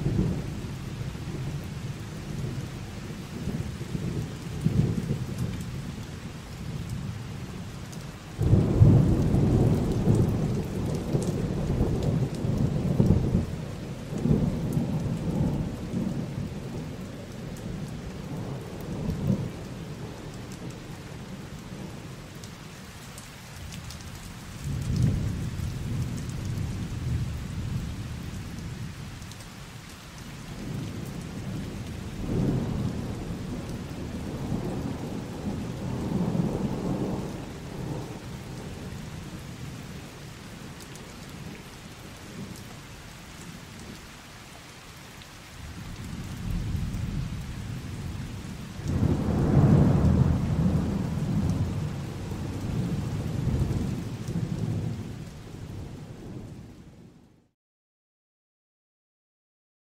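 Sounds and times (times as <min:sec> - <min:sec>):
steady rain: 0:00.0 - 0:57.5
rolling thunder: 0:08.4 - 0:17.0, 0:30.6 - 0:39.9, 0:45.6 - 0:57.1.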